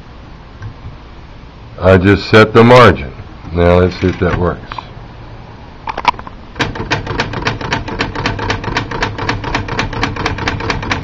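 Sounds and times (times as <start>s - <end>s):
manual typewriter clicking: 6.6s - 11.0s.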